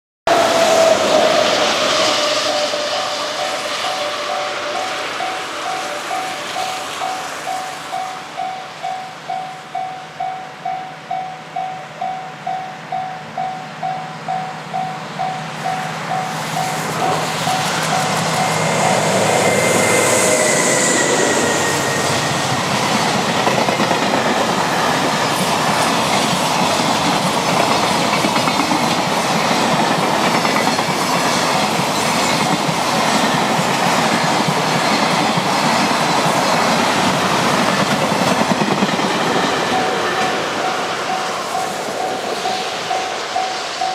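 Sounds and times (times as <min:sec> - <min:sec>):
freight train rumbling past: 0:00.3 - 0:43.9
wheels clattering on rails: 0:15.2 - 0:43.9.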